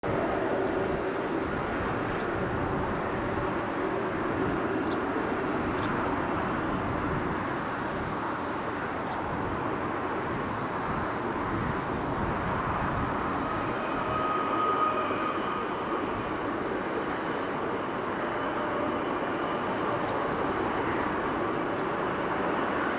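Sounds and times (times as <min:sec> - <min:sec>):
train wheels rumbling on rail: 0:00.0 - 0:22.9
faint thin squeal: 0:12.4 - 0:21.2.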